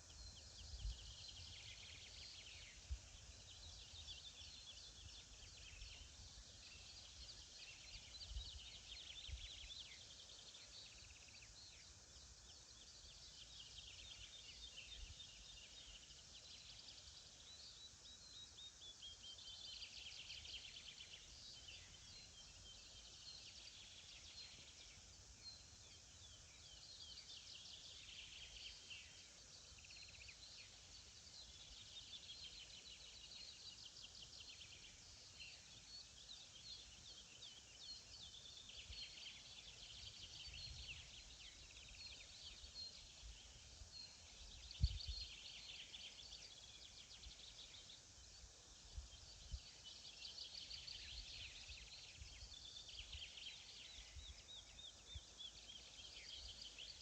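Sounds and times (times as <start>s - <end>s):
songbirds singing: 0.0s - 57.0s.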